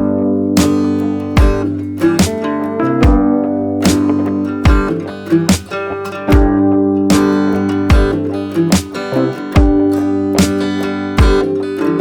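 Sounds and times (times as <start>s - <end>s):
strummed guitar: 0.0s - 12.0s
steady low drum beat: 1.4s - 5.7s, 6.3s - 8.9s, 9.6s - 10.6s, 11.2s - 11.6s.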